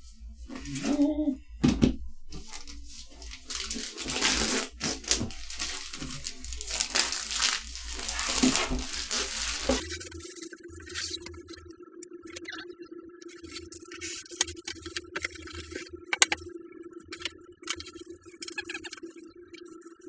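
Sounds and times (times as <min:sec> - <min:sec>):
plastic packaging crinkling: 0:02.3 - 0:10.2.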